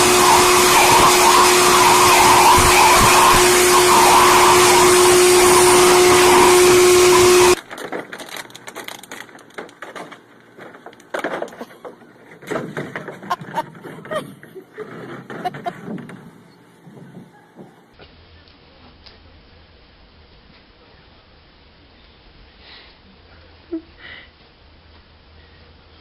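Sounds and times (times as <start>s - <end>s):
hair dryer blowing: 0.0s - 7.6s.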